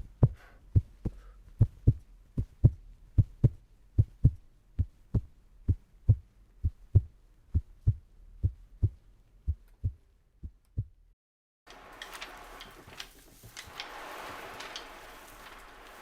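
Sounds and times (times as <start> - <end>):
heartbeat thumps: 0.0 - 11.2.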